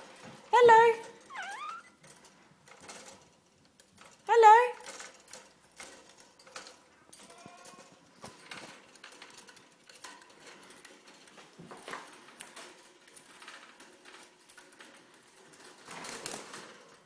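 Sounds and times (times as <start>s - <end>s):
budgie chirps: 1.3s - 1.9s.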